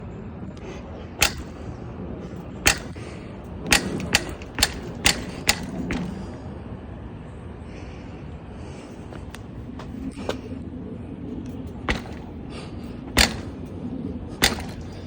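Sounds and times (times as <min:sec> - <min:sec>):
sharp pops from bike: 0:03.7 - 0:06.2, 0:11.9 - 0:12.3, 0:13.2 - 0:13.6, 0:14.4 - 0:15.0.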